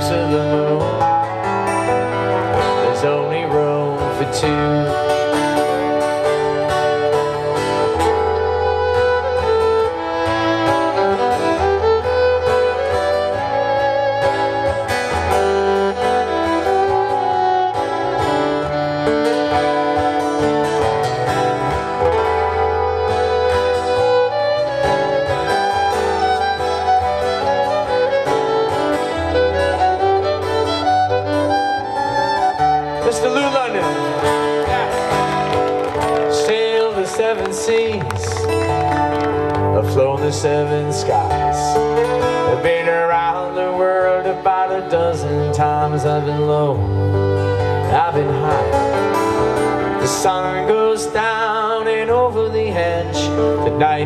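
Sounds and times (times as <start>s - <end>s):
guitar accompaniment: 0.0s - 54.0s
string instrument melody: 0.0s - 54.0s.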